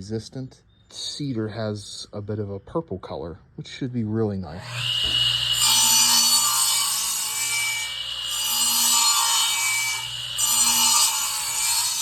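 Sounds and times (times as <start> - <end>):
lathe gouge scraping wood: 4.6 - 12.0.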